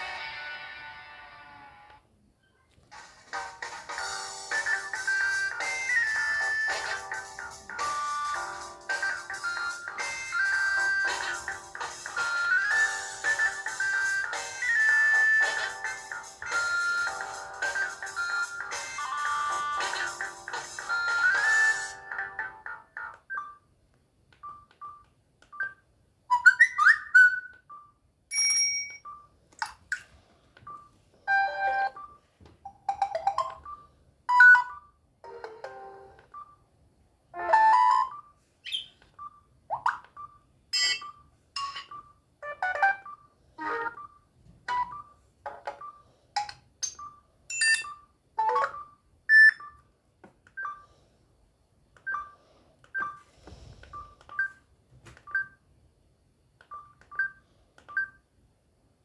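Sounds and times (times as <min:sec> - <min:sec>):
phone ringtones and alert tones: 0:04.0 - 0:23.7, 0:30.7 - 0:36.6, 0:37.4 - 0:49.8.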